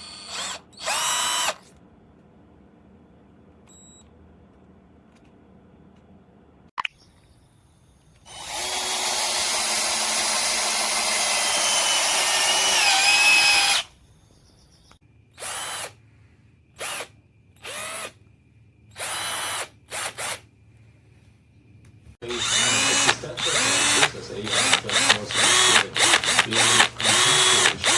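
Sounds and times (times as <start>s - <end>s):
cordless drill motor whining: 0.0s - 1.7s, 8.2s - 14.0s, 15.4s - 16.0s, 16.8s - 18.2s, 18.9s - 20.4s, 22.2s - 27.9s.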